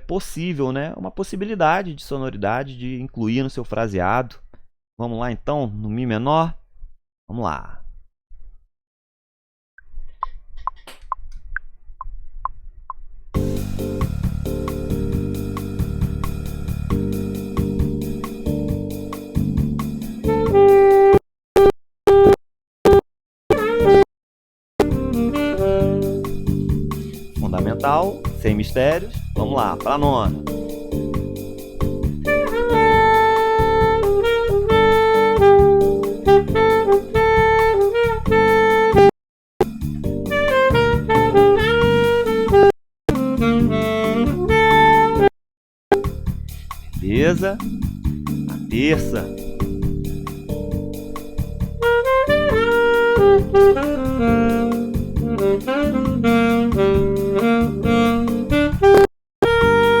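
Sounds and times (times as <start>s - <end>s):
backing track beat: 13.4s - 21.2s, 23.5s - 24.0s, 24.8s - 45.3s, 45.9s - 60.0s
saxophone sustained notes: 23.5s - 24.0s, 24.9s - 26.2s, 32.3s - 39.1s, 40.3s - 42.5s, 43.2s - 45.3s, 51.8s - 60.0s.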